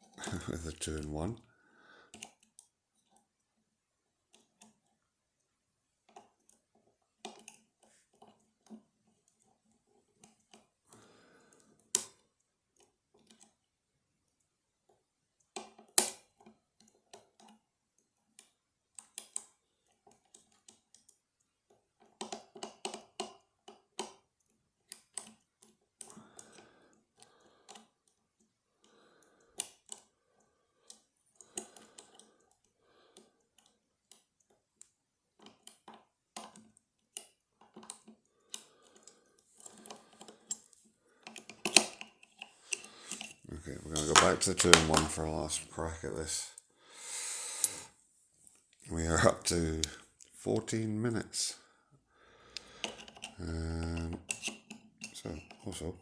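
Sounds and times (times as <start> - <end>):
lock pick clicking and scraping: 35.4 - 45.2, 52.6 - 55.8.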